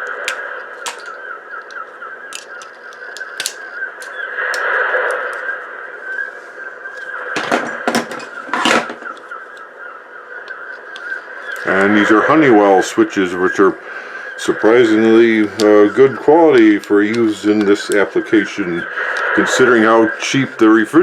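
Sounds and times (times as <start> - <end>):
sharp clicks: 0.0 - 5.5.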